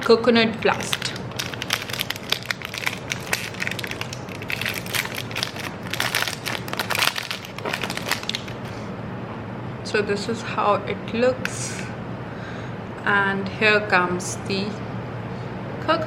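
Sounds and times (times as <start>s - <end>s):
wrapper crinkling: 0.6s - 8.7s.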